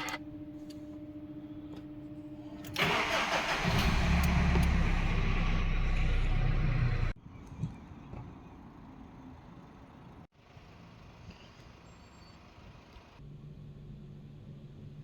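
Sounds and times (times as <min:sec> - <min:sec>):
car starter cranking: 0:02.7 - 0:07.0
car engine idling: 0:02.8 - 0:07.2.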